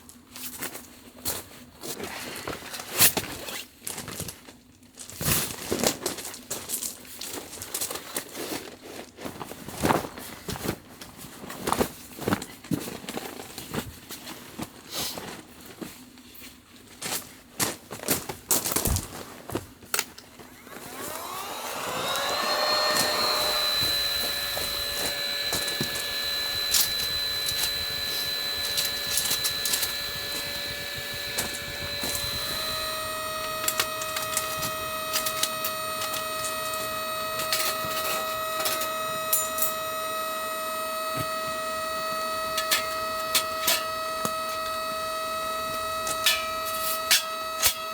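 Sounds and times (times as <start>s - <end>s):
small electric motor whine: 20.5s - 47.9s.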